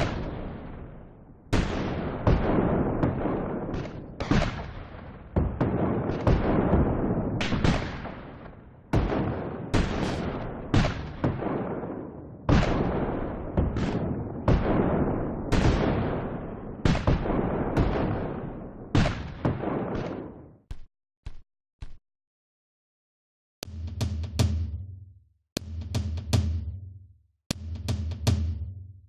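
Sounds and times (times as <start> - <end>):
echoing gunshot blasts: 0.0 - 20.6.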